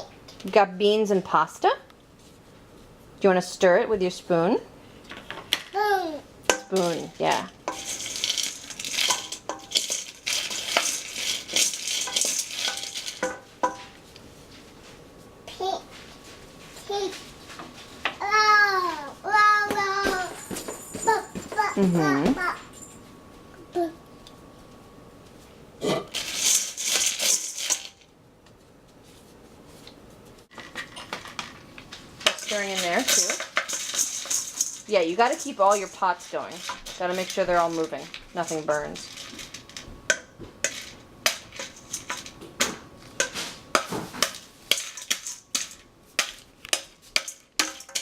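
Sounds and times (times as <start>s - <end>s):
spoon scraping a pot: 6.5s - 14.0s, 32.2s - 39.7s.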